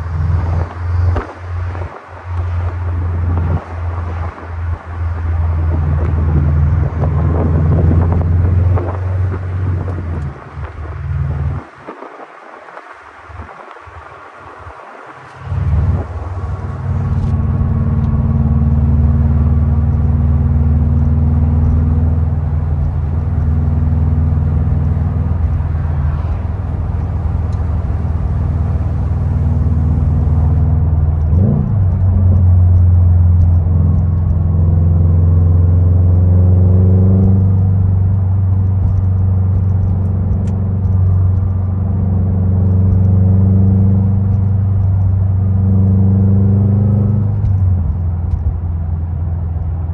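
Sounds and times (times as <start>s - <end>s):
car engine cruising drone: 0.0s - 49.9s.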